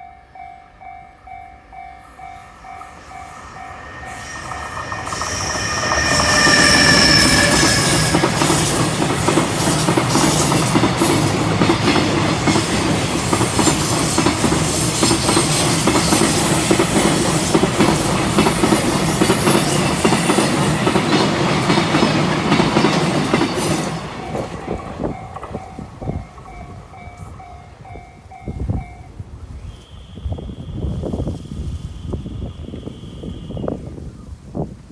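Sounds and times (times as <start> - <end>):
high tone: 0.0 - 9.4
train wheels clacking over rail joints: 3.5 - 26.8.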